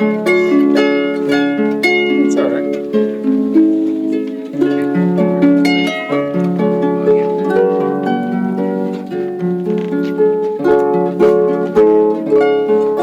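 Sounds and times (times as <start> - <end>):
plucked-string holiday music: 0.0 - 13.0.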